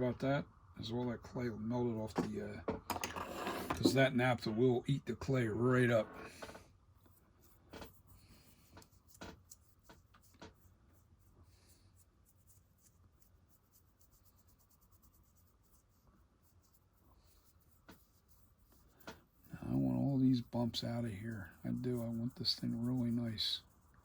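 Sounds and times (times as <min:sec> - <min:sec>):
sculpting tool scratching clay: 0:03.2 - 0:04.4, 0:07.0 - 0:24.0.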